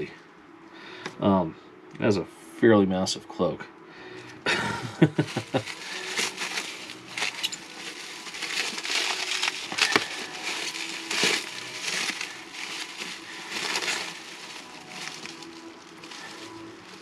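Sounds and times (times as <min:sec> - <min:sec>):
packaging crinkling and rustling: 0:04.5 - 0:17.0.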